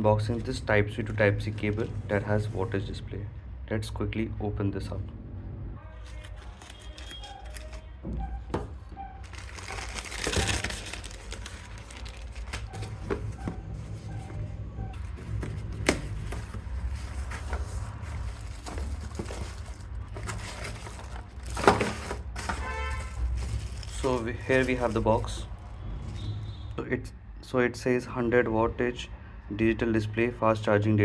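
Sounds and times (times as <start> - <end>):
packaging crinkling and tearing: 6.0 - 7.8, 9.2 - 13.0, 16.2 - 25.8.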